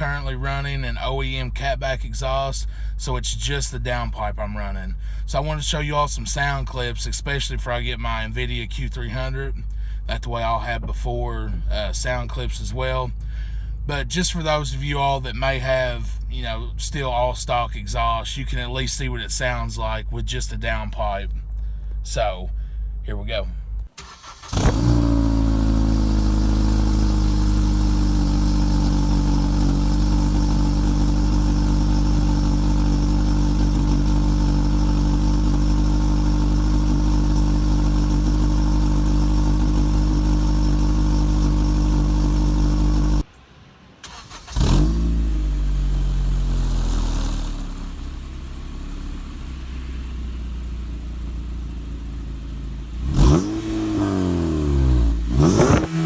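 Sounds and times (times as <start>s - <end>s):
car engine idling: 0.0s - 56.0s
car engine revving: 24.0s - 43.3s, 44.0s - 56.0s.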